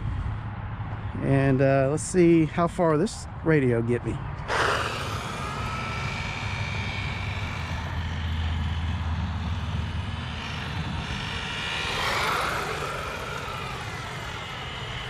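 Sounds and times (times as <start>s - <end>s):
rc truck motor whine: 4.4s - 15.0s.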